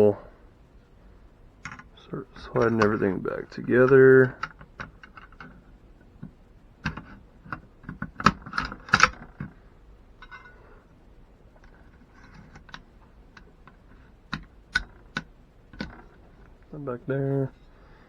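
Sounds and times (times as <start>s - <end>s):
metal rifle parts clicking: 1.6s - 5.6s, 6.8s - 9.6s, 10.2s - 10.6s.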